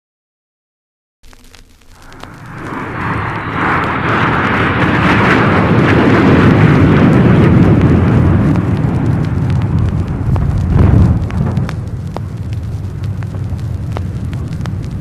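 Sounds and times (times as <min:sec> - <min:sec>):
military jet roaring: 0:01.9 - 0:15.0.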